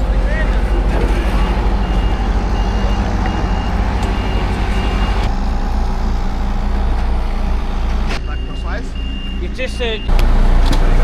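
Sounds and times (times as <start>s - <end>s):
vehicle engine running: 0.0s - 8.2s
reversing alarm beeping: 0.6s - 10.2s.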